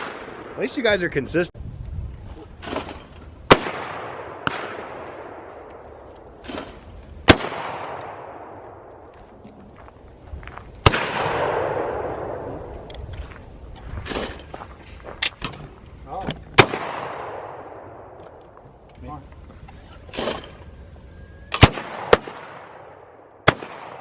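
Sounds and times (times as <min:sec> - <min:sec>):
shotgun shots echoing: 0:00.0 - 0:00.8, 0:03.5 - 0:09.0, 0:10.8 - 0:12.9, 0:16.6 - 0:18.2, 0:21.5 - 0:24.0.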